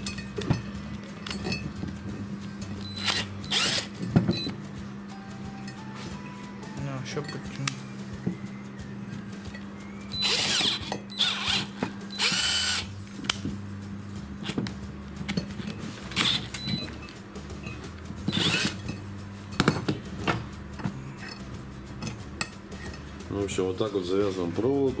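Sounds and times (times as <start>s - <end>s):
cordless drill bursts: 2.9s - 3.9s, 10.1s - 12.9s, 18.3s - 18.8s.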